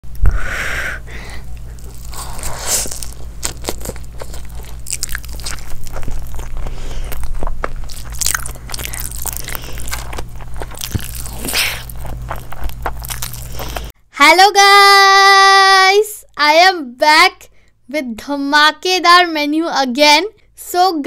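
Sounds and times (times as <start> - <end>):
chewing crisp food: 1.4 - 13.9.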